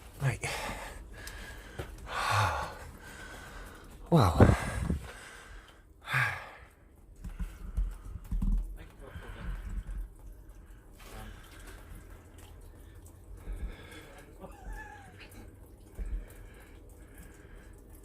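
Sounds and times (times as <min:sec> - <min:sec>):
water dripping: 0:00.0 - 0:18.0
low thuds of people moving: 0:04.2 - 0:05.1.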